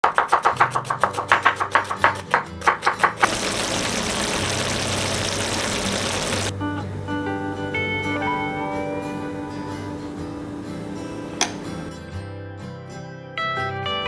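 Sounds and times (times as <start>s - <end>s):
knife chopping on cutting board: 0.0s - 3.3s
food sizzling in hot pan: 3.2s - 6.5s.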